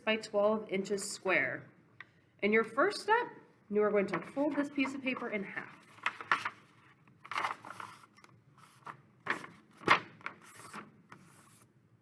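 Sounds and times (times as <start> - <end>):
paper rustling and folding: 4.1 - 11.6.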